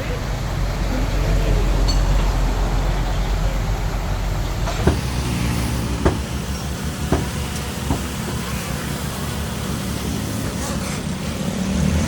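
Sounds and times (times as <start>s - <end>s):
bulldozer diesel engine running: 0.0s - 12.0s
sharp knocks: 4.6s - 5.2s, 6.0s - 6.4s, 7.0s - 8.5s.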